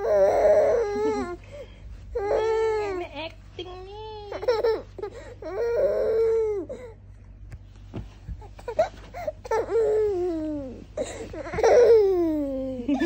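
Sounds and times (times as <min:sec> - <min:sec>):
baby crying: 0:00.0 - 0:01.6, 0:02.2 - 0:03.0, 0:04.3 - 0:07.0, 0:08.6 - 0:12.8
baby vocal sounds: 0:00.0 - 0:03.0.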